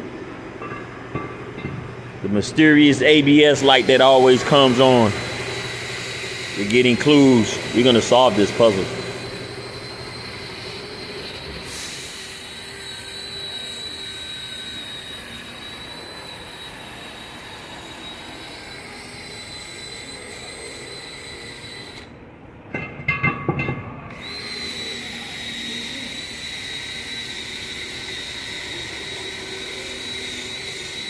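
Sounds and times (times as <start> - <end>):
high-pitched whine: 0.0 - 31.0
low mechanical shop noise: 0.0 - 31.0
metal tools knocking and clanking: 0.6 - 1.9, 22.7 - 24.0.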